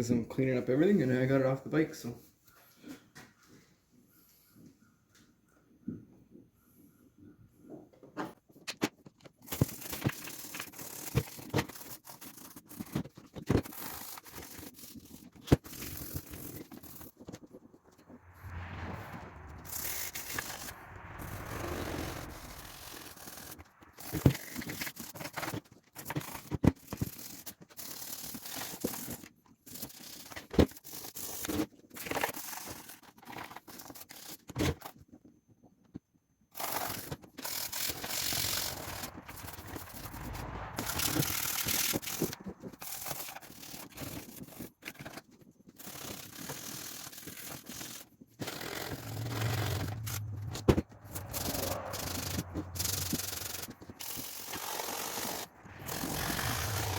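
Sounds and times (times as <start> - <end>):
hands scraping plastic: 8.2 - 18.1.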